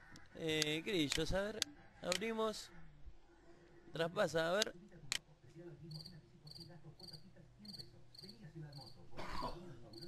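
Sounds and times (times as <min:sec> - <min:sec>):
recorded crickets chirping: 0:05.8 - 0:10.0.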